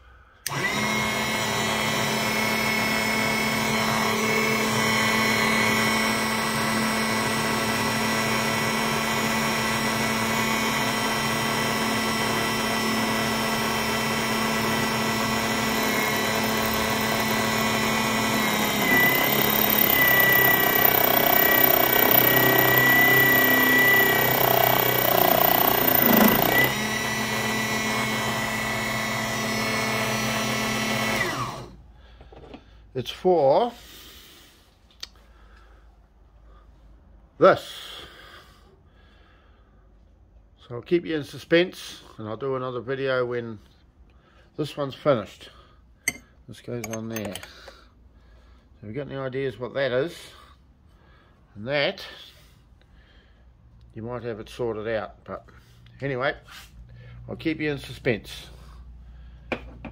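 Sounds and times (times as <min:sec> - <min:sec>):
machine tool whining: 0:00.4 - 0:31.8
metal being cut: 0:00.5 - 0:31.7, 0:46.8 - 0:47.7.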